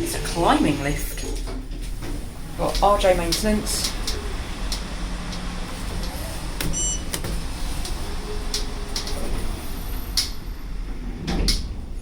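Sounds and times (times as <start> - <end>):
electric lift drive humming: 0.0 - 12.0
faint clicks: 2.7 - 9.4.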